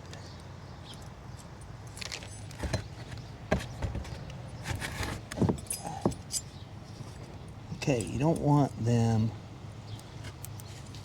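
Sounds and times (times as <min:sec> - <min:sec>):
small metal parts clinking: 0:05.5 - 0:07.3.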